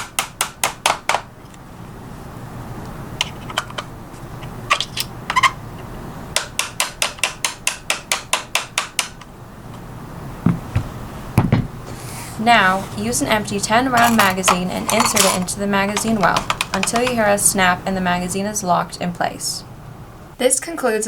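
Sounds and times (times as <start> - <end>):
small hammer tapping a pin punch: 0.0 - 1.3, 6.4 - 9.3.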